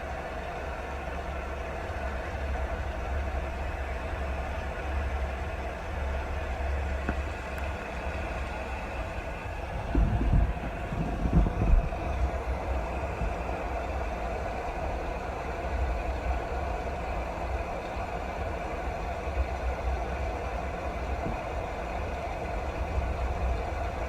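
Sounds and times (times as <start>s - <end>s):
muffled rain: 0.0s - 24.0s
low thumps: 9.7s - 12.6s.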